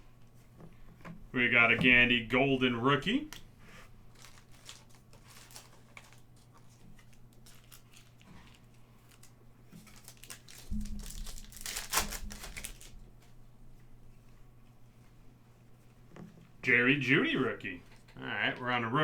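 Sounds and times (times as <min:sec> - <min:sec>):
foil wrapper crinkling and tearing: 0:04.0 - 0:13.4.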